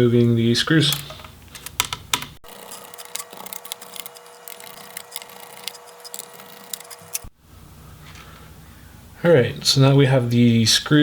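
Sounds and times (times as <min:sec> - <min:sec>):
screwdriver clicking on screws: 0:01.0 - 0:07.3.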